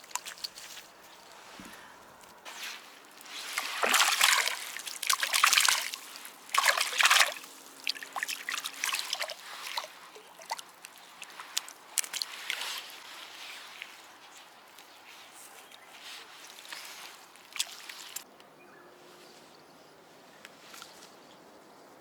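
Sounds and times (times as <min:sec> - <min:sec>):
water splashing: 0:00.0 - 0:01.6, 0:02.5 - 0:14.0, 0:16.2 - 0:18.2
water dripping: 0:00.0 - 0:01.8, 0:02.8 - 0:14.0, 0:16.4 - 0:18.2.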